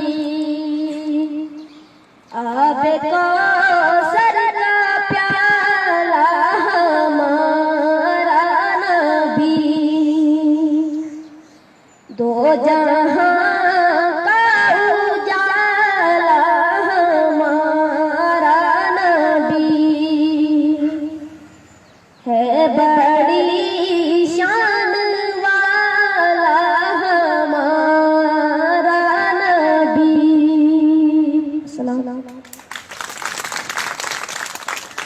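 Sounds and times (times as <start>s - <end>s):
person singing devotional song: 0.0s - 11.1s, 22.2s - 32.5s.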